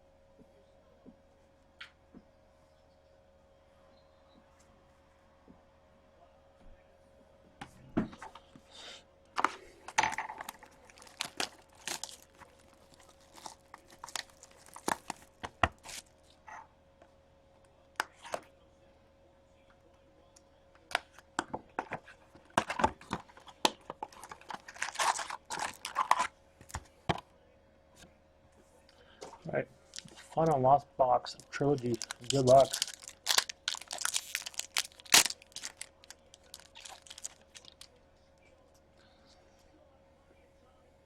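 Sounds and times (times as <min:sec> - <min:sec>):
faint steady hum: 0:00.0 - 0:41.0
shrink wrap tearing and crinkling: 0:10.3 - 0:16.2, 0:22.5 - 0:26.3, 0:29.9 - 0:30.4, 0:31.4 - 0:38.0.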